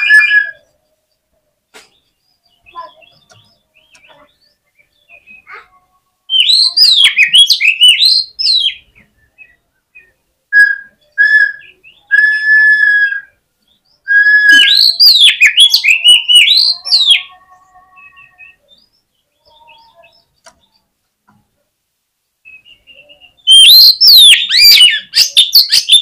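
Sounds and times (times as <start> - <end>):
whistled bird notes: 0.0 - 0.8, 14.0 - 17.2, 22.4 - 26.0
faint bird chirps: 0.0 - 12.2, 13.2 - 21.7, 22.4 - 26.0
bird warbling song: 0.0 - 12.3, 13.6 - 21.4, 22.4 - 26.0.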